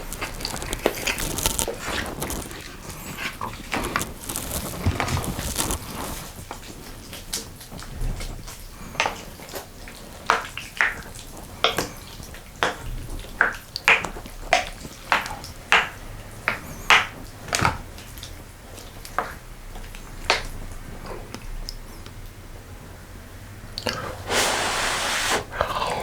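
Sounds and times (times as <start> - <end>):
eating mouth sounds: 23.8 - 26.0.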